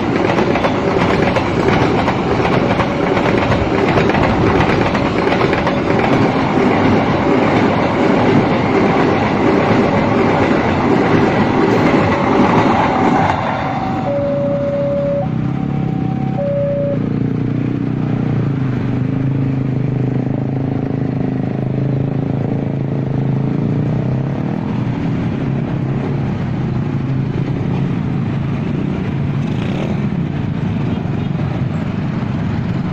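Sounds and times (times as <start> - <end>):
passing train rumble: 0.0 - 32.9
low engine drone: 12.8 - 22.3
two-tone locomotive horn: 13.6 - 17.4.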